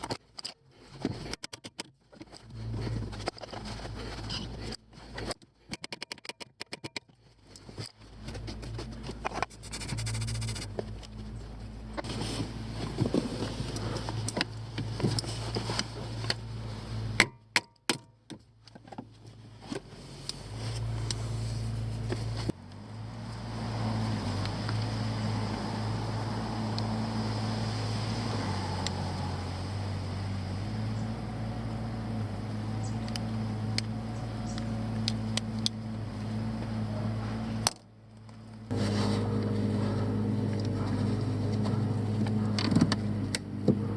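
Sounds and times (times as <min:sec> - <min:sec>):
fast run of clicks: 0:08.4 - 0:11.2
steady low hum: 0:20.0 - 0:43.9.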